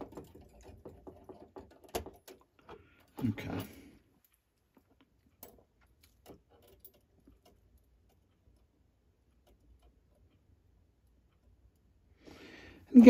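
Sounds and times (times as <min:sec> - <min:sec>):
small metal parts clicking: 0:00.0 - 0:10.4.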